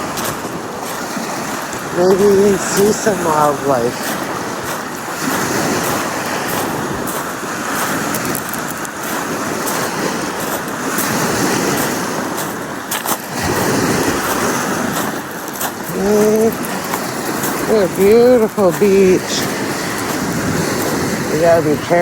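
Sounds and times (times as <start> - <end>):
waves washing onto beach: 0.0 - 22.0.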